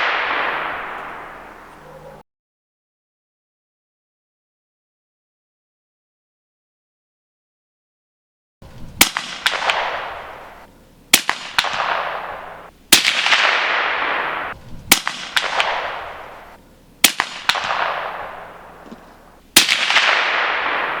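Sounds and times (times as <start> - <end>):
suppressed rifle shots: 0.0 - 1.9, 9.0 - 21.0.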